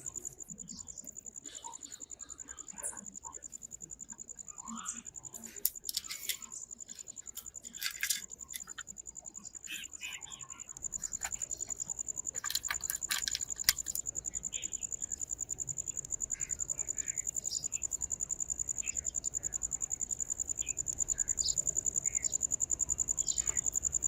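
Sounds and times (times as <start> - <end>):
high-pitched insect chirping: 0.0 - 24.0
clicks and scrapes: 5.3 - 9.0, 11.0 - 14.1.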